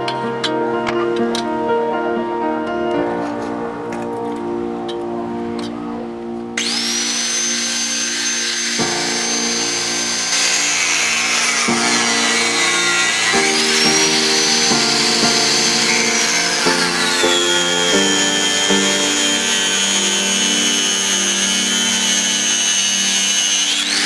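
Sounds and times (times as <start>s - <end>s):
background music: 0.0s - 24.0s
hissing cutting noise: 6.6s - 24.0s
power tool motor whining: 6.6s - 24.0s.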